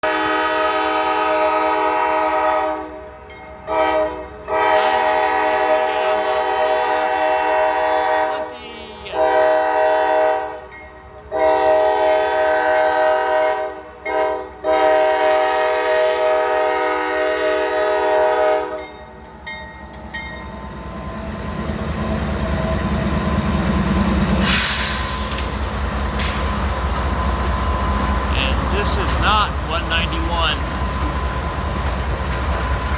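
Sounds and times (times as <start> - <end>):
locomotive air horn blasts: 0.0 - 3.0, 3.7 - 10.6, 11.3 - 18.8, 28.3 - 30.6
train rumble and wheel clatter: 0.0 - 32.9.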